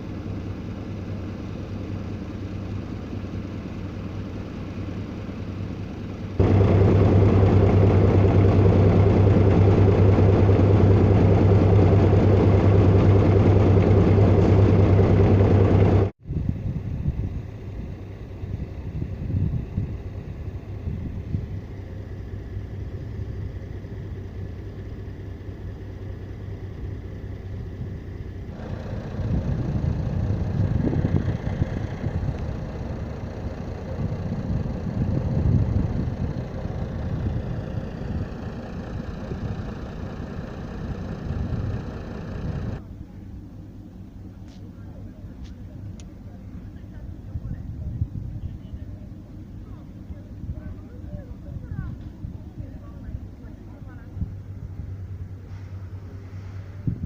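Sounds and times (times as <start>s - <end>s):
diesel train engine rumbling: 0.0s - 57.0s
falling whine: 6.4s - 16.2s.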